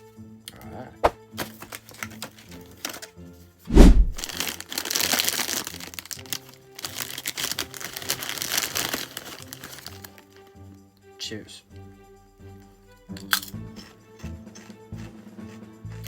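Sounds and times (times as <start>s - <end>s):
background music: 0.0s - 16.0s
snack packet crinkling: 1.4s - 3.1s, 4.2s - 10.4s.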